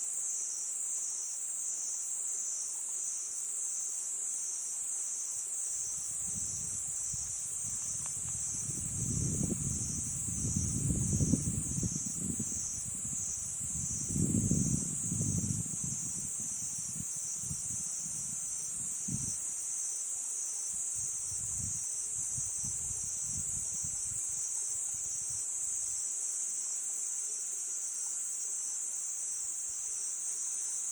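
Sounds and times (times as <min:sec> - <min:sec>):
crickets chirring: 0:00.0 - 0:30.9
wind buffeting microphone: 0:05.8 - 0:19.4, 0:21.0 - 0:25.4.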